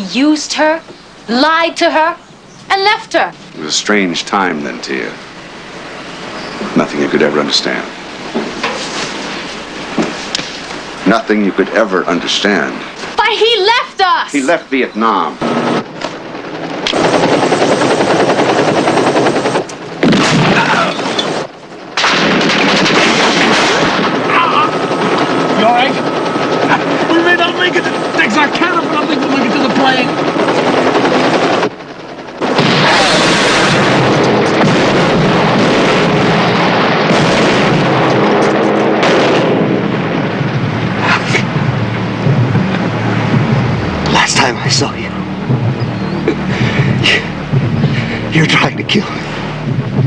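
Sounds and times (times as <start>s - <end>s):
explosions: 20.0s - 24.2s, 32.4s - 50.0s
gunfire: 20.0s - 24.2s, 32.4s - 39.9s.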